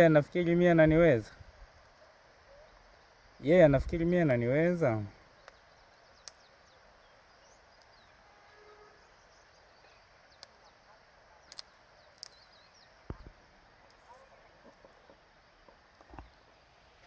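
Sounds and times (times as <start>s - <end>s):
high insect drone: 0.0s - 17.0s
faint bird chirps: 2.0s - 3.3s, 5.2s - 15.4s.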